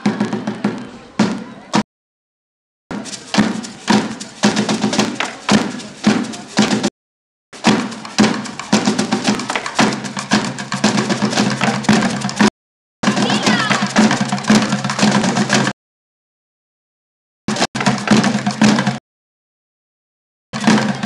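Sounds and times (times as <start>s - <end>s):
percussion ensemble drumming: 2.9s - 6.9s, 7.6s - 15.7s, 17.5s - 19.0s, 20.6s - 21.0s.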